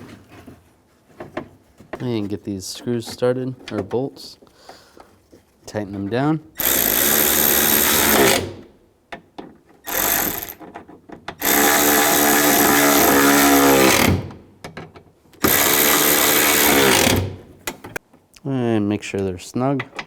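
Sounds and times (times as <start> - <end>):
cordless power driver running: 15.4 - 17.3.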